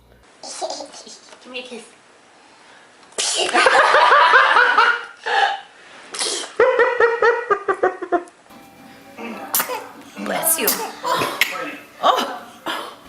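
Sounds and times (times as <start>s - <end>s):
child laughing: 0.4s - 1.4s.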